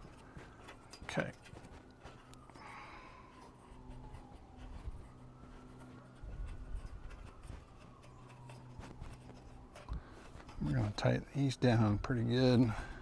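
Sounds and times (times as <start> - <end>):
low steady hum: 0.0 - 13.0
screw scratching and clicking: 6.2 - 11.1.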